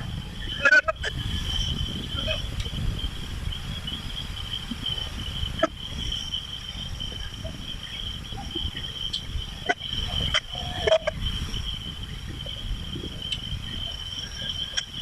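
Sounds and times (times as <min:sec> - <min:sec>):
high-pitched insect trill: 0:00.0 - 0:15.0.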